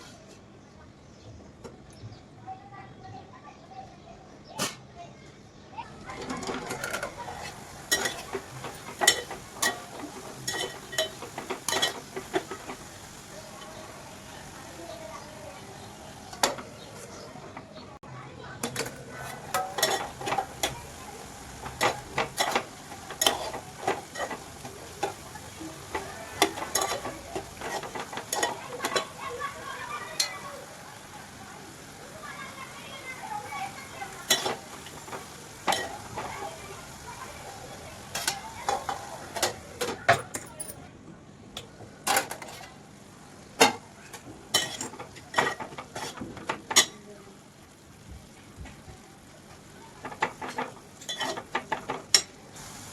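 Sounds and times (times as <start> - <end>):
frying sizzle: 4.1 - 40.7, 41.4 - 52.9
spoon scraping a pan: 6.4 - 13.9, 18.8 - 29.6, 33.6 - 36.6, 44.5 - 47.0, 50.0 - 52.4.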